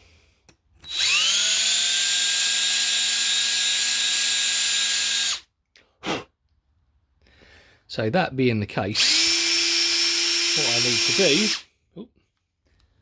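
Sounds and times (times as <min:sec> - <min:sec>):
power drill spinning: 0:00.8 - 0:05.4, 0:09.0 - 0:11.6.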